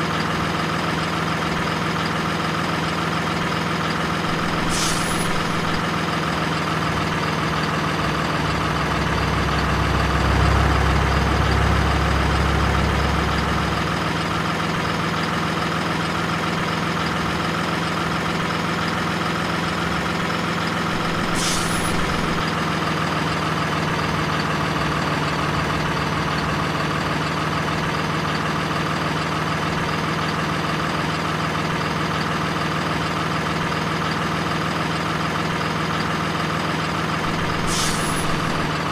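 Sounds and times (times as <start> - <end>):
diesel truck engine idling: 0.0 - 38.9
brief sharp high sound: 4.3 - 5.9, 21.0 - 22.4, 37.2 - 38.8.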